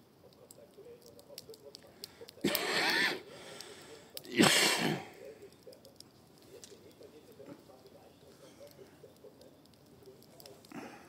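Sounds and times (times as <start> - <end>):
campfire crackling: 0.0 - 11.0
loud breathy rush: 1.9 - 5.4.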